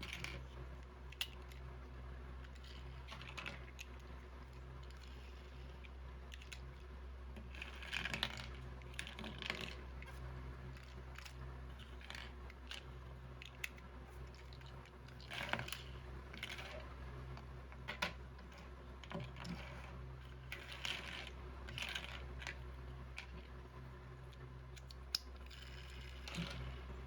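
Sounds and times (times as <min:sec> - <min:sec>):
low steady hum: 0:00.0 - 0:27.0.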